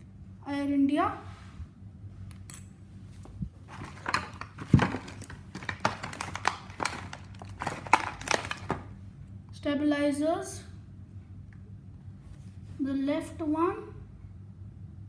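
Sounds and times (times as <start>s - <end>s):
packaging crinkling: 3.6s - 9.0s
plastic parts clicking: 3.7s - 8.9s.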